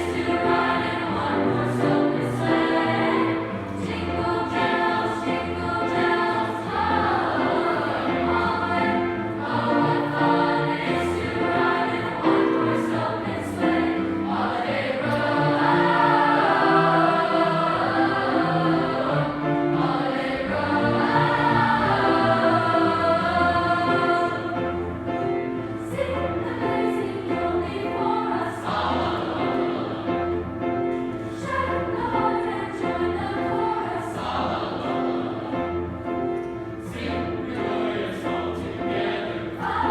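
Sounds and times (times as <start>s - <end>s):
children's choir singing carols: 0.0s - 39.9s.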